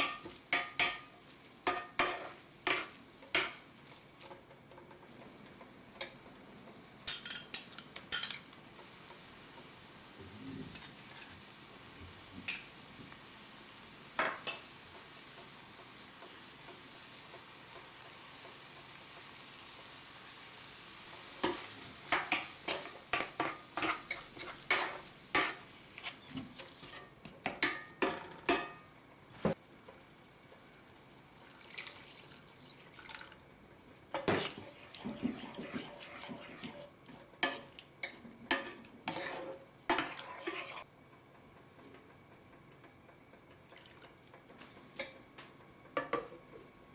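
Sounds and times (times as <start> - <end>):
vegetables sizzling in a frying pan: 0.0 - 28.0, 28.8 - 32.6.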